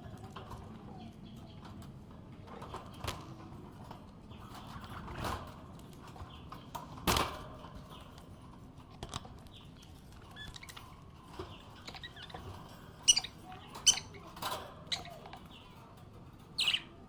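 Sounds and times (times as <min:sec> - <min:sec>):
budgerigar chirping: 0:13.1 - 0:14.2, 0:16.6 - 0:16.9.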